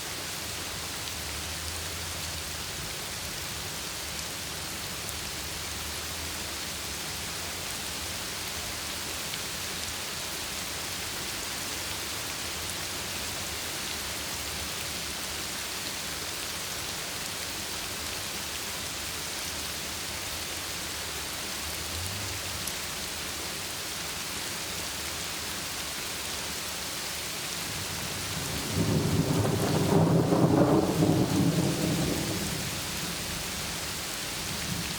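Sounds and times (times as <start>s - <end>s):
heavy rain falling: 0.1s - 34.9s
thunder rumbling: 27.8s - 33.5s.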